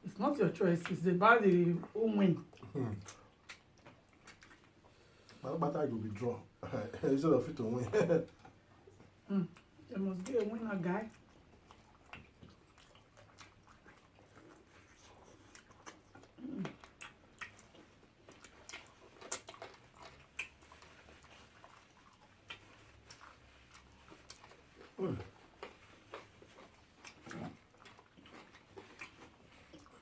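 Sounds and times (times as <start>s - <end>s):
wet mouth eating sounds: 1.8s - 5.4s, 11.1s - 30.0s.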